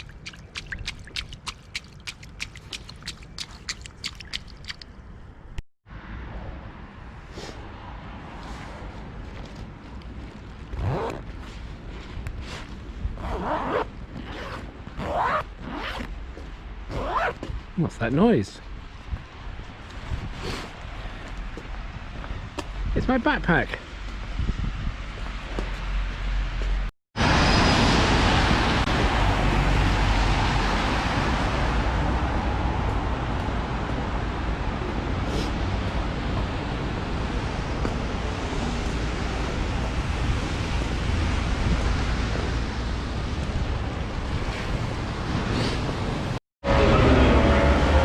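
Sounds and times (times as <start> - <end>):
backpack zip rasping: 10.7 - 11.5, 13.2 - 16.1, 16.9 - 17.4
passing vehicle traffic: 27.2 - 48.0.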